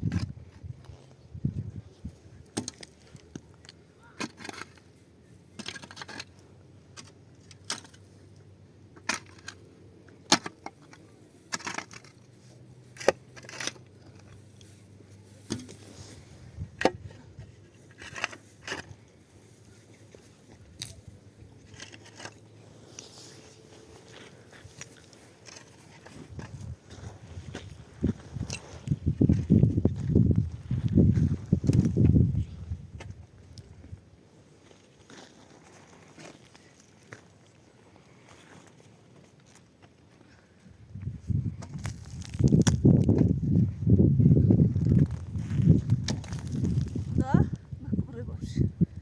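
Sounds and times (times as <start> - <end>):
scraping: 10.3 - 33.2
clicks of hard objects handled: 20.5 - 22.4, 24.1 - 26.7.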